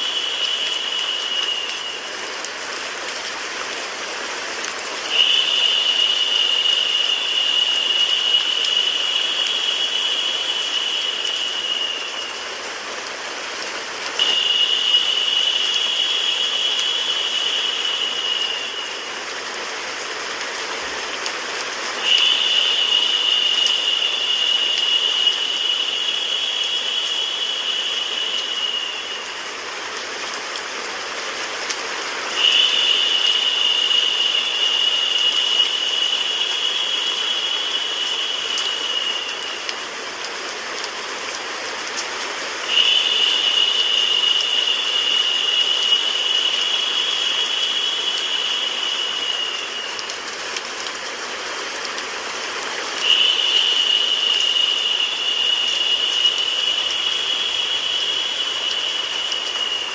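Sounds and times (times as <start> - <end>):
recorded rain: 0.0 - 59.9.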